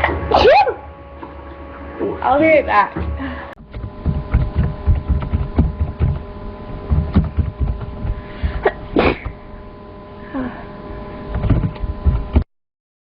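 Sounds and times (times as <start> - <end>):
low thumps: 2.3 - 9.4, 11.3 - 12.4
woman sneezing: 8.6 - 9.3.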